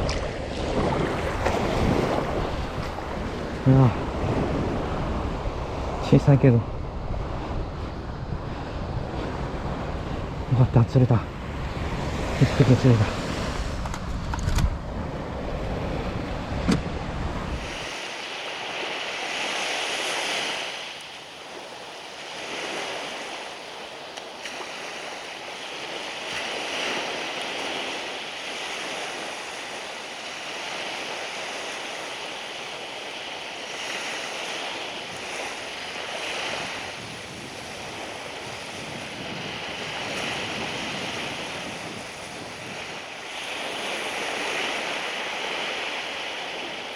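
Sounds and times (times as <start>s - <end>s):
wind buffeting microphone: 0.0s - 19.4s, 34.7s - 46.7s
surf washing up beach: 0.0s - 46.9s.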